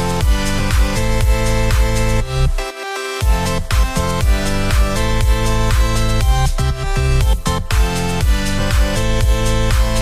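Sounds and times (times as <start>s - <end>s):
electronic cinematic music: 0.0s - 10.0s
heavy bass beat: 0.0s - 10.0s.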